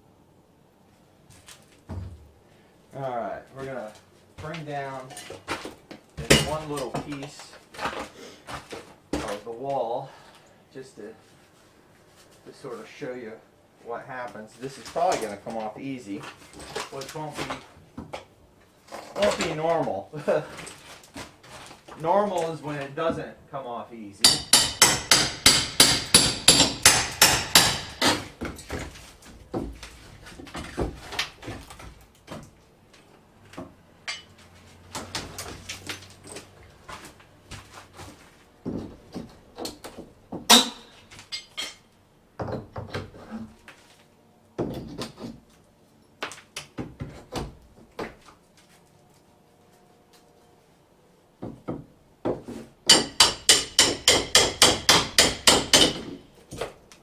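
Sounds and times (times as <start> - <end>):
hammer striking plaster wall: 24.3 - 28.6, 51.4 - 56.2.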